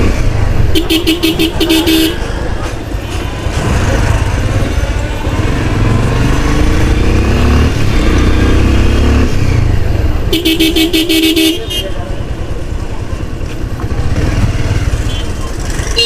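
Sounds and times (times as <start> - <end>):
motorcycle engine and road rumble: 0.0 - 16.0
vehicle horn beeping: 0.7 - 2.2, 10.3 - 12.0, 14.9 - 16.0.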